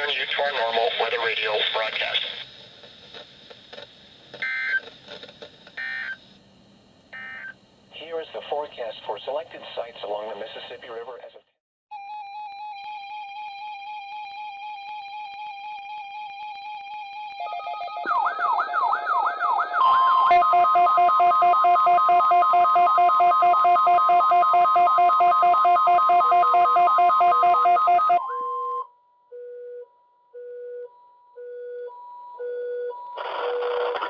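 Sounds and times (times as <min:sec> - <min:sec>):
steady warning alarm tone: 0:05.8 - 0:06.2, 0:12.0 - 0:29.6
siren-like electronic sweeps: 0:12.0 - 0:24.8
radio beeping alternating pitches: 0:16.4 - 0:28.2.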